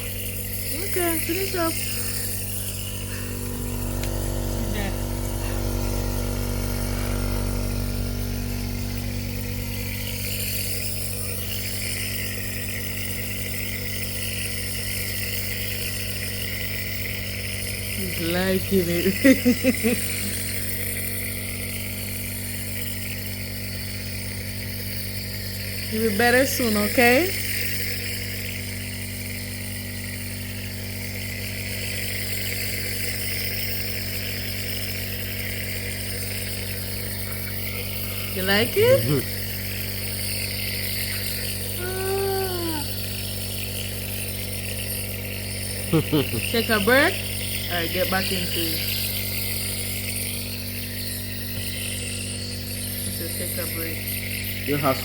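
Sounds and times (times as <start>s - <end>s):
nebulizer motor hum: 0.0s - 55.0s.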